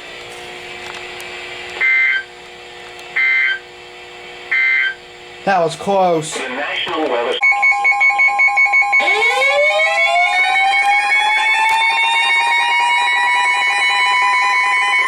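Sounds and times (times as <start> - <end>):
rapidly pulsing beep: 1.8 - 2.3, 4.5 - 5.0, 7.4 - 9.2
siren wailing: 7.4 - 15.0.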